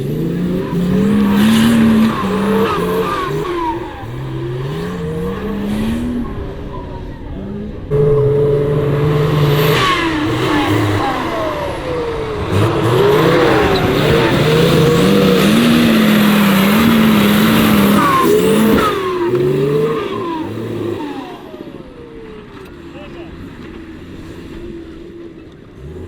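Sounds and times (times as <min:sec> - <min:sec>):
off-road engine revving: 0:00.0 - 0:26.0.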